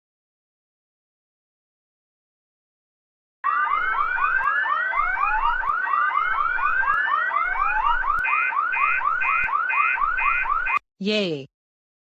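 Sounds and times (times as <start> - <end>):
fire alarm sweeping whoop: 3.4 - 10.8.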